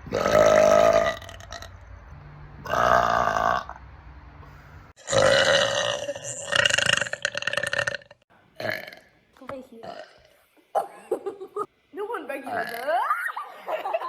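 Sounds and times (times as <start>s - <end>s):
girls burping: 12.4s - 13.3s.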